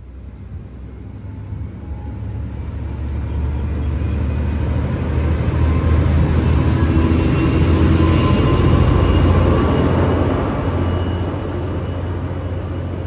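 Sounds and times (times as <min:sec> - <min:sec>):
diesel locomotive engine rumble: 0:00.0 - 0:13.0.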